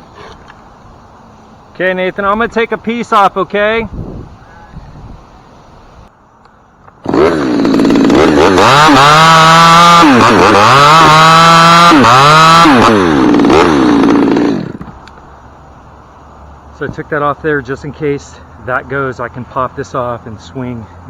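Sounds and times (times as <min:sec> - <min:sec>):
chainsaw cutting wood: 0:07.0 - 0:15.0.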